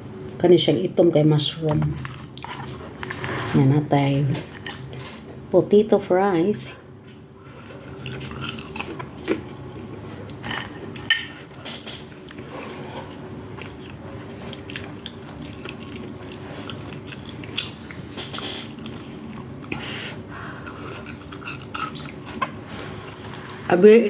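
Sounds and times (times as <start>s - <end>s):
person chewing crunchy food: 1.9s - 3.6s, 4.5s - 5.4s, 7.1s - 23.7s.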